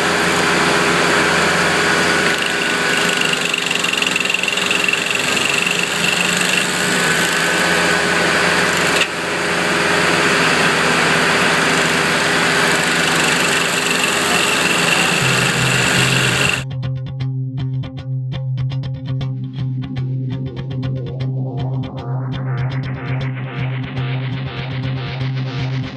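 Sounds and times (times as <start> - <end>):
stump grinder running: 0.0 - 16.6.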